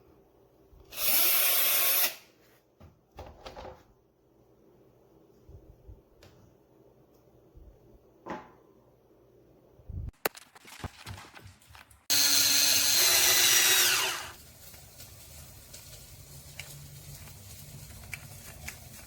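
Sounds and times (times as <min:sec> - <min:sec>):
cordless drill whining: 0:12.1 - 0:14.4.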